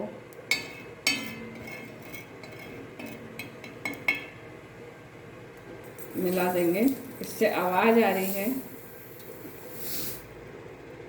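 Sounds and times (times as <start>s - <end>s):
hot salt sizzling in water: 5.8s - 10.4s.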